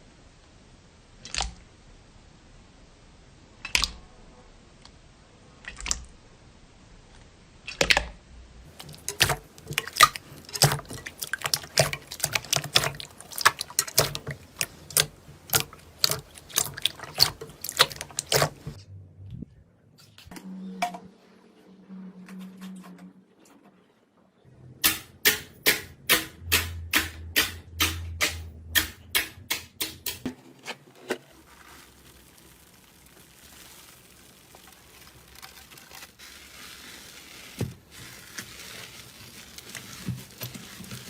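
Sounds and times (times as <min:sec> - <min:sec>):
slime popping and crackling: 0:08.7 - 0:18.8, 0:31.3 - 0:41.0.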